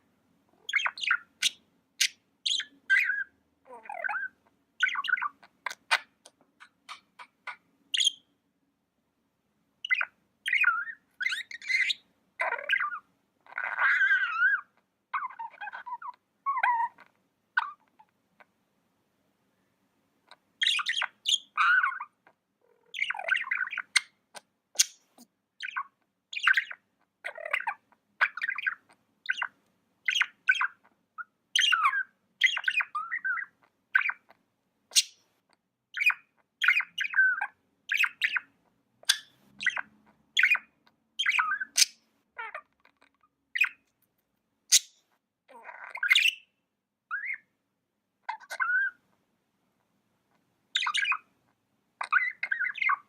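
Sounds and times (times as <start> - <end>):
budgie chirping and chattering: 0.6 - 8.3, 9.8 - 18.1, 20.3 - 35.2, 35.9 - 43.9, 44.7 - 47.5, 48.2 - 49.0, 50.7 - 51.3, 52.0 - 53.0.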